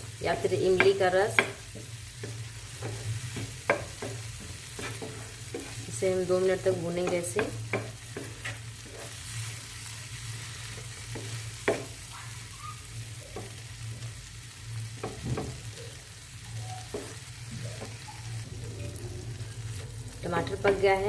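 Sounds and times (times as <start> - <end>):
food sizzling in a frying pan: 0.0 - 21.0
spoon knocking against pan: 0.7 - 5.8, 6.9 - 8.4, 11.1 - 12.0, 15.0 - 15.7, 16.9 - 17.2.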